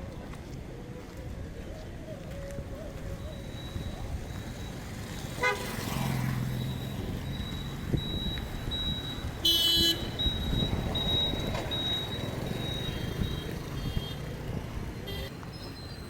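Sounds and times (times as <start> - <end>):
street traffic rumble: 0.0 - 16.0
shrill vehicle horn toot: 5.4 - 5.8, 9.4 - 10.2.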